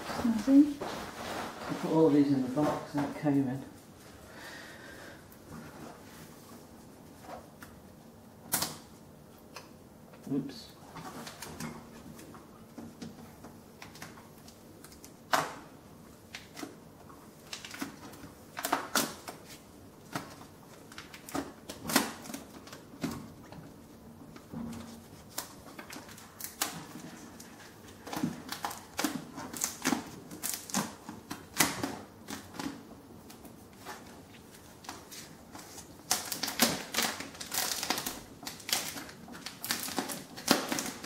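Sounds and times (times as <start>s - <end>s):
packaging being handled: 17.4s - 41.0s.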